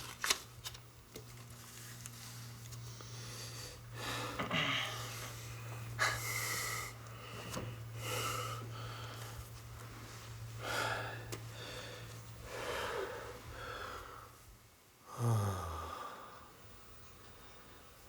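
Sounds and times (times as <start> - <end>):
steady low hum: 0.0 - 18.0
person breathing heavily: 2.9 - 9.5, 10.6 - 14.4, 15.1 - 16.5.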